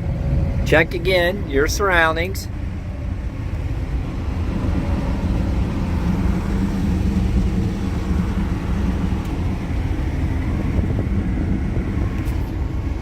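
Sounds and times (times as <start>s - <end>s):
excavator diesel engine humming: 0.0s - 13.0s.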